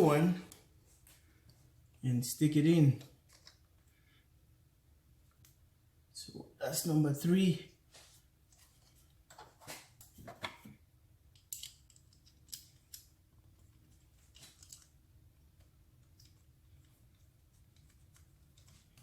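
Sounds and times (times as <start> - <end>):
light clicks and small rattles: 3.0 - 4.0, 11.3 - 19.0.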